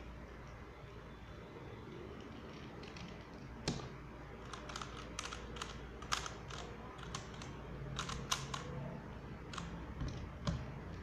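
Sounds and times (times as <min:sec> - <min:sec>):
puzzle cube plastic clicking: 0:04.4 - 0:08.7, 0:09.5 - 0:10.2.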